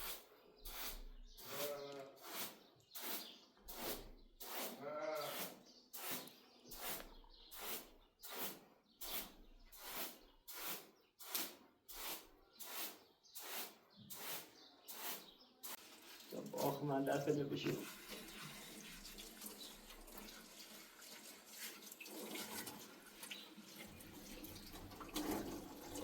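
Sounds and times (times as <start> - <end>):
livestock bleating: 1.5 - 2.2, 4.8 - 5.4.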